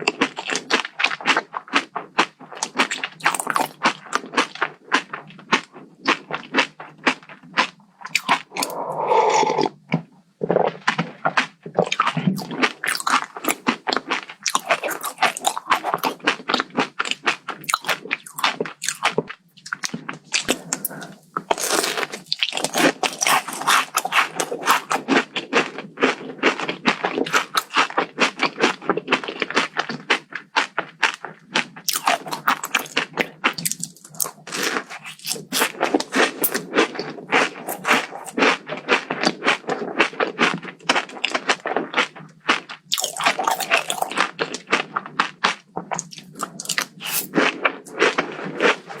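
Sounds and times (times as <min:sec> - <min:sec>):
crunching and chewing: 0:00.0 - 0:49.0.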